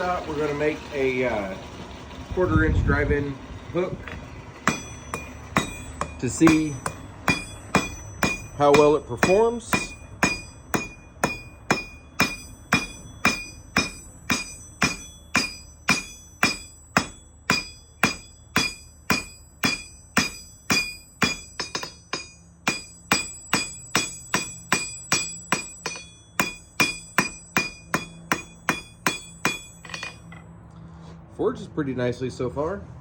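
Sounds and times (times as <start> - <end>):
hammer striking hot steel: 4.6 - 30.4
anvil ringing: 4.6 - 30.5.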